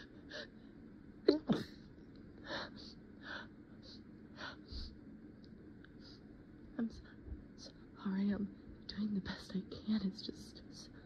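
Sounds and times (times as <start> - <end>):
person stifled sneeze: 1.3 - 1.8.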